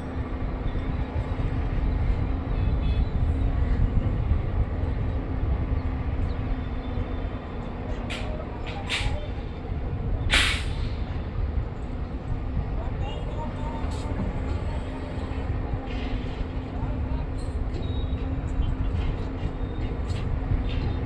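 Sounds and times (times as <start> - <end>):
construction machine engine rumbling: 0.0 - 21.0
short hisses: 10.3 - 11.0.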